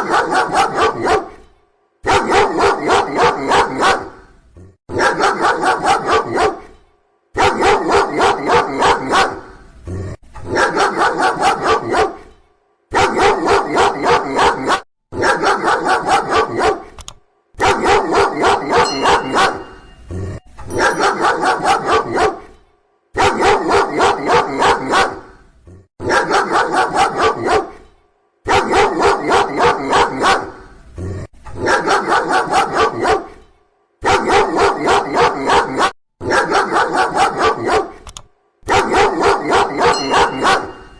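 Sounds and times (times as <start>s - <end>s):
dog barking loudly: 0.0s - 1.4s, 2.0s - 4.3s, 4.9s - 6.8s, 7.4s - 9.6s, 10.4s - 12.3s, 12.9s - 17.0s, 17.6s - 20.0s, 20.7s - 22.6s, 23.2s - 25.4s, 26.0s - 27.8s, 28.4s - 30.7s, 31.6s - 33.4s, 34.0s - 38.0s, 38.6s - 40.9s.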